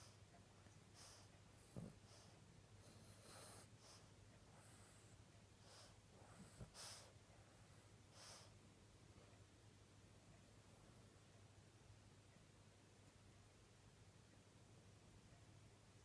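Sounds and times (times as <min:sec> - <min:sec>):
dog snoring and snorting: 0:01.6 - 0:02.1, 0:02.8 - 0:03.8.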